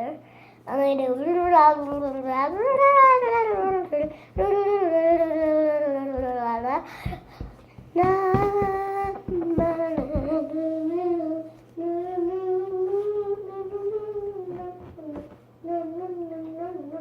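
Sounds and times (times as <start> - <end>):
girl humming a tune: 0.0 - 17.0.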